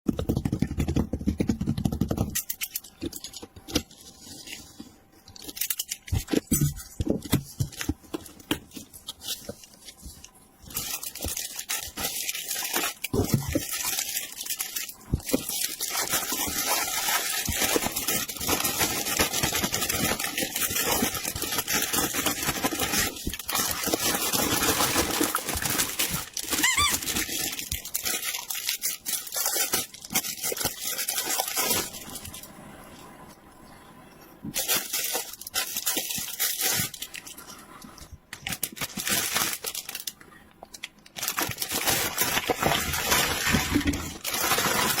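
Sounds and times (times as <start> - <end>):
plastic packaging crinkling: 0.3 - 32.5, 34.5 - 45.0.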